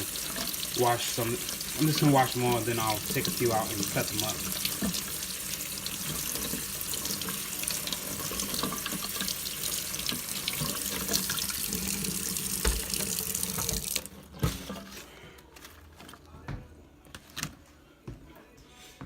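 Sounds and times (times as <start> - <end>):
kitchen tap running: 0.0 - 14.7.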